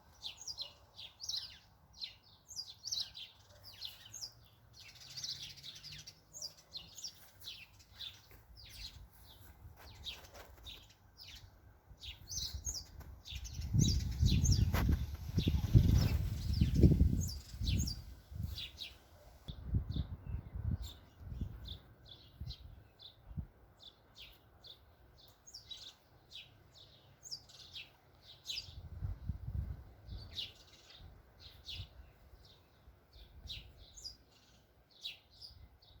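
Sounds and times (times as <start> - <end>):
small birds chirping: 0.0 - 36.0
wind buffeting microphone: 12.0 - 18.8, 19.5 - 21.8, 28.7 - 30.4.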